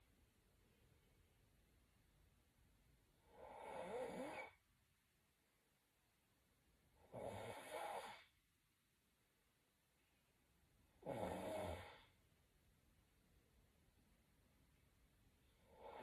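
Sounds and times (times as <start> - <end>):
person snoring: 3.2 - 4.6, 7.0 - 8.3, 11.0 - 12.2, 15.6 - 16.0.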